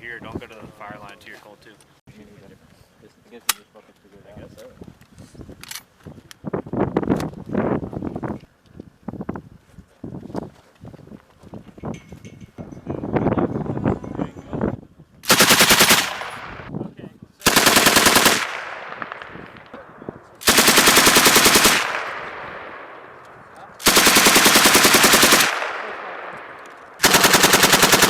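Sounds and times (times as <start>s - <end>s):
machine gun bursts: 15.2s - 16.5s, 17.4s - 19.6s, 20.4s - 22.2s, 23.8s - 26.0s, 26.9s - 28.0s
gunfire echo: 15.3s - 16.7s, 17.5s - 28.0s.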